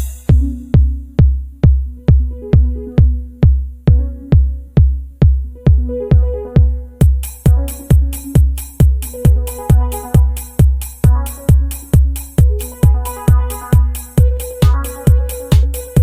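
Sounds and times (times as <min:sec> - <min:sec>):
hi-hats: 0:00.0 - 0:00.9, 0:07.0 - 0:16.0
kick drum: 0:00.0 - 0:16.0.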